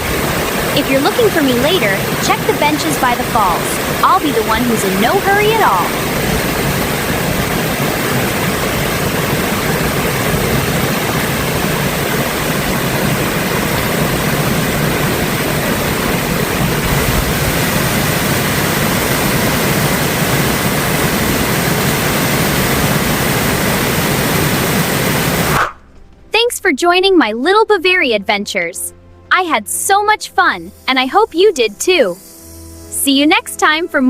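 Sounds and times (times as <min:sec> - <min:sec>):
waterfall rushing: 0:00.0 - 0:25.6.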